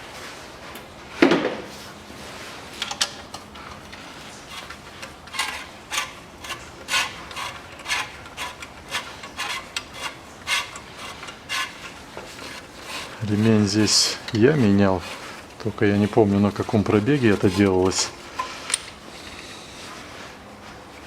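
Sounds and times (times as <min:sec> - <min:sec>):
hand ratchet strokes: 0:03.7 - 0:19.6.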